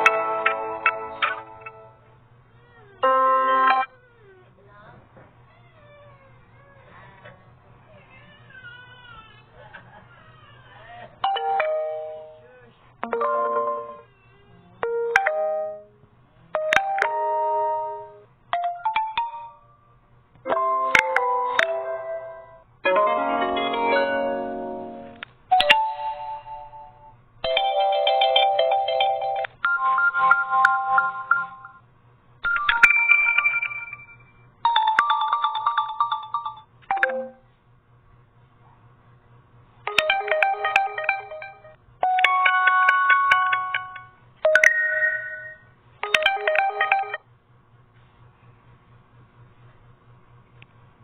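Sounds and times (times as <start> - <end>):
phone ringtone chimes: 25.6 - 26.9, 27.5 - 31.8, 32.5 - 37.4, 40.0 - 47.2
phone notification chimes: 40.0 - 47.2.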